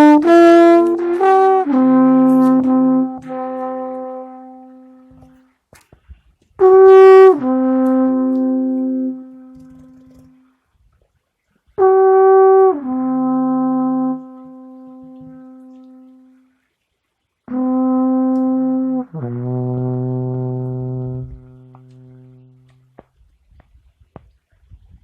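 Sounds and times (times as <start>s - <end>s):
alphorn playing: 0.0s - 5.4s, 6.6s - 10.5s, 11.8s - 16.4s, 17.5s - 23.0s.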